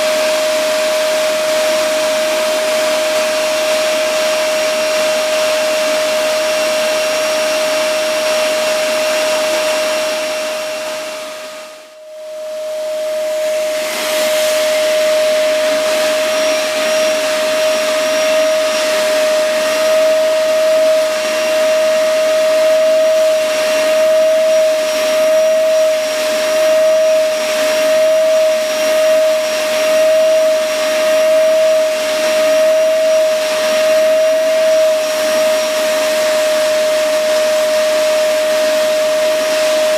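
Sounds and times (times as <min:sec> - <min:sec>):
vacuum cleaner running: 0:00.0 - 0:39.9.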